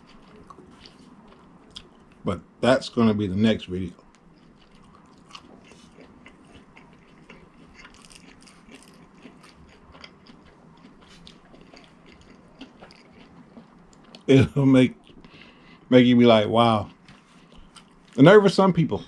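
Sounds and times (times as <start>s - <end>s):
chewing and biting food: 0.0s - 2.2s, 3.9s - 14.3s, 14.9s - 15.8s, 16.8s - 18.2s.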